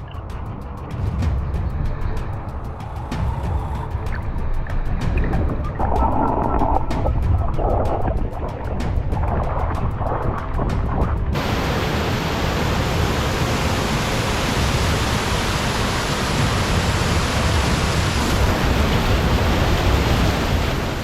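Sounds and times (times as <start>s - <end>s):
waterfall rushing: 5.2s - 21.0s.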